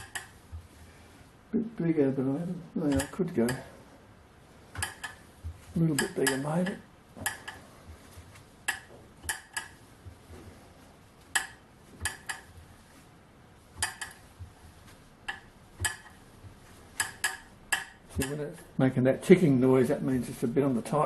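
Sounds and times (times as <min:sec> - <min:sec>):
screw thread ticking in metal: 0:00.0 - 0:00.4, 0:02.9 - 0:03.6, 0:04.8 - 0:05.3, 0:05.9 - 0:07.6, 0:08.7 - 0:09.8, 0:11.3 - 0:12.5, 0:13.8 - 0:14.3, 0:15.3 - 0:16.2, 0:17.0 - 0:18.4.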